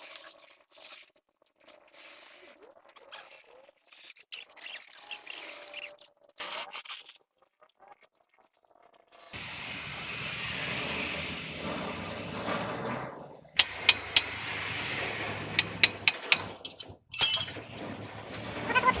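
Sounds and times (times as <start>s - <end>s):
metallic clinks and knocks: 13.6s - 14.5s, 15.6s - 17.6s.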